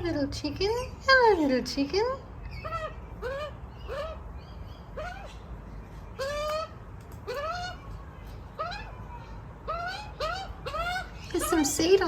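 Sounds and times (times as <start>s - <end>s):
young magpie begging squawks: 1.9s - 5.4s, 8.6s - 12.0s.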